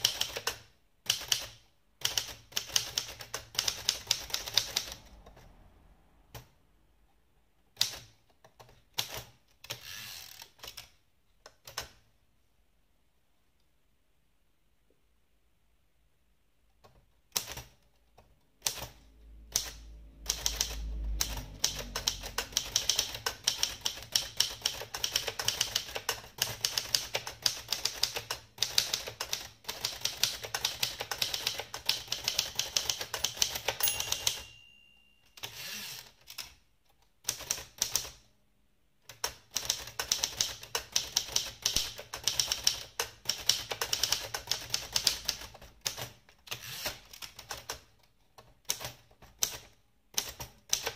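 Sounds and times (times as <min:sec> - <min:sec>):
typewriter typing: 0:00.0 - 0:05.4, 0:07.7 - 0:12.0, 0:16.9 - 0:34.7, 0:37.2 - 0:38.3, 0:39.0 - 0:50.9
typewriter bell ring: 0:32.7 - 0:36.1.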